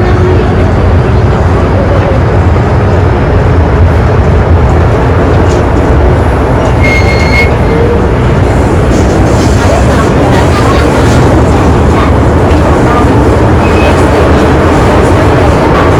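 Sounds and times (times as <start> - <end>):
train wheels rumbling on rails: 0.0 - 15.9.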